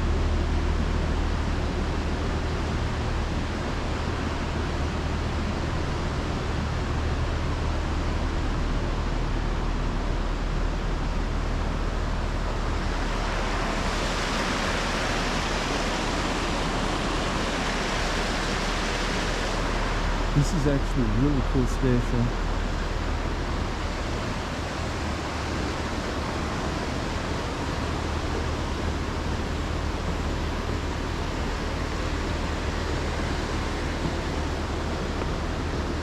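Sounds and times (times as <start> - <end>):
low hum: 0.0 - 36.0
running water rushing: 11.7 - 36.0.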